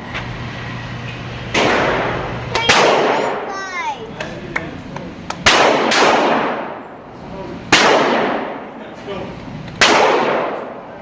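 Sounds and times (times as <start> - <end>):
rifle shots: 1.6 - 3.5, 5.4 - 6.8, 7.7 - 8.6, 9.8 - 10.8.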